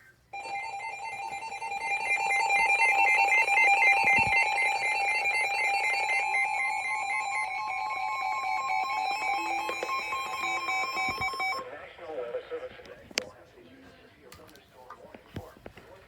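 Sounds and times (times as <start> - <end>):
electronic alarm of paired tones: 0.3 - 11.6.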